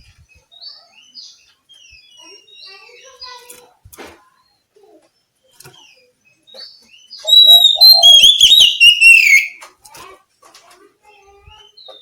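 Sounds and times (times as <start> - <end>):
bird singing whistled notes: 7.0 - 9.6.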